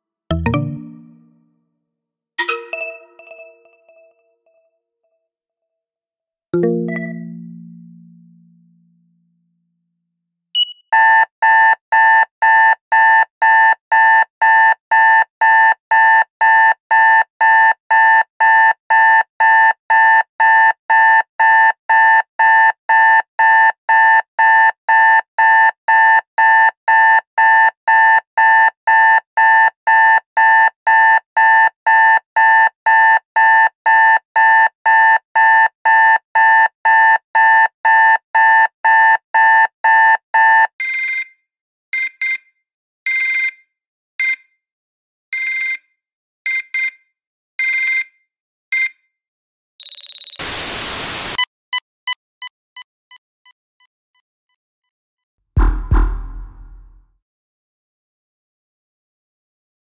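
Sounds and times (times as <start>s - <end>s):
electronic beeping: 49.8s - 51.5s.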